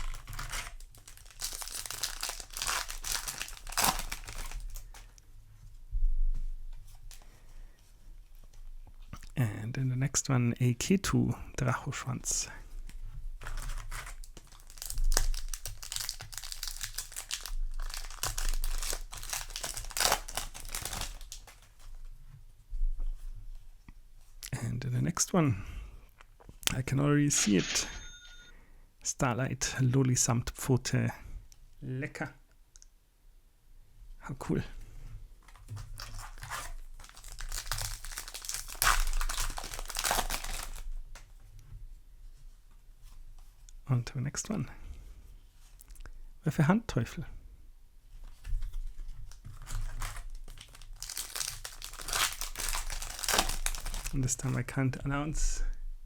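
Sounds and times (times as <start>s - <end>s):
foil wrapper crinkling and tearing: 0.0s - 5.1s, 13.4s - 22.0s, 35.8s - 40.9s, 48.9s - 54.6s.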